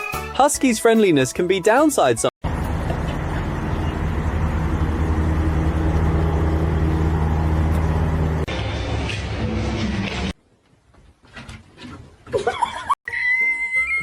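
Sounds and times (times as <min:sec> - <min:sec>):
motor drone with hum and hiss: 0:02.5 - 0:08.5.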